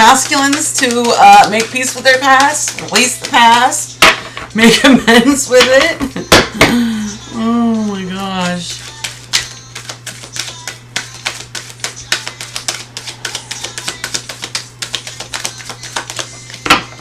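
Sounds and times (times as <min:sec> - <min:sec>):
cards being shuffled: 0:00.0 - 0:03.8, 0:08.2 - 0:17.0
low electrical hum: 0:00.0 - 0:17.0.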